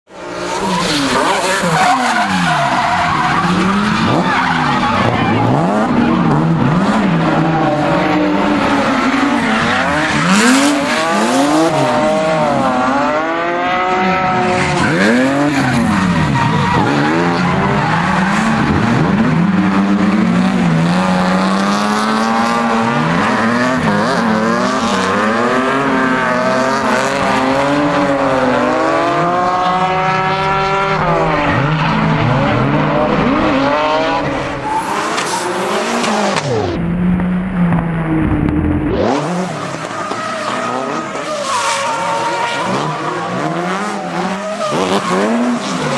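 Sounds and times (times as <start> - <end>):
car engine revving: 0.1 - 45.9
tyres squealing: 39.2 - 45.9.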